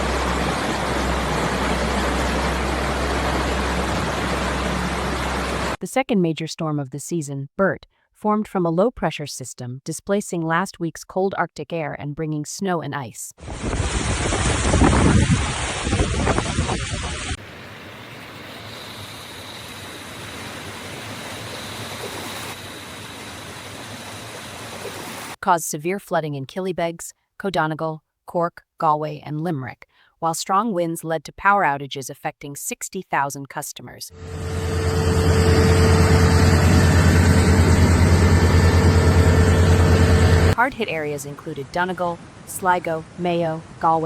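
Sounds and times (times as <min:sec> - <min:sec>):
engine running with rapid pulsing: 0:00.0 - 0:05.8, 0:34.1 - 0:40.6
floodwater rushing: 0:00.0 - 0:05.8, 0:13.4 - 0:18.7, 0:19.5 - 0:25.4, 0:34.2 - 0:40.6.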